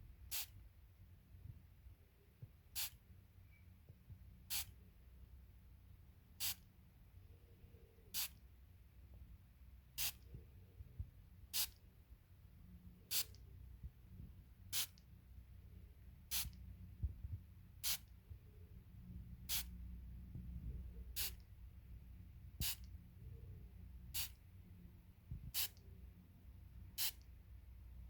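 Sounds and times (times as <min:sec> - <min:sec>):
atomizer spray puffs: 0:00.3 - 0:00.5, 0:04.5 - 0:04.7, 0:06.4 - 0:06.6, 0:08.1 - 0:08.4, 0:10.0 - 0:10.3, 0:11.6 - 0:11.8, 0:13.1 - 0:13.4, 0:14.7 - 0:15.0, 0:16.3 - 0:16.6, 0:17.8 - 0:18.1, 0:19.5 - 0:19.8, 0:21.1 - 0:21.4, 0:22.6 - 0:22.9, 0:24.1 - 0:24.4, 0:25.5 - 0:25.9, 0:27.0 - 0:27.3.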